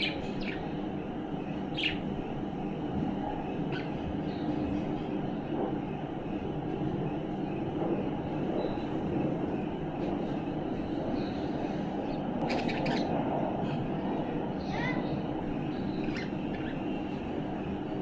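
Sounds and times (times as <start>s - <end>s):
low rumble of passing train: 0.0s - 18.0s
scratchy budgie chatter: 12.4s - 13.2s.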